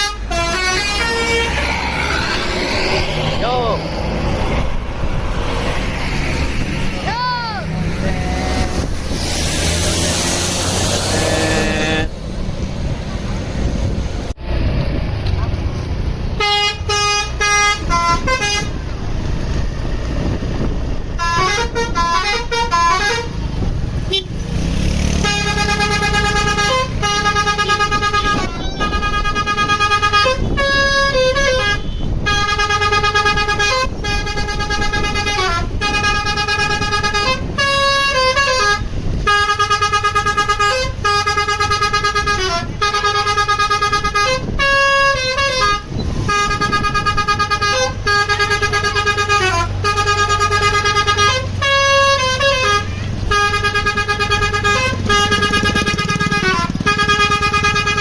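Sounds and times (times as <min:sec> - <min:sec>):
multi-tone air horn melody: 0:00.0 - 0:01.6, 0:16.4 - 0:18.8, 0:21.2 - 0:23.4, 0:25.2 - 0:58.0
bus engine rumble: 0:00.0 - 0:58.0.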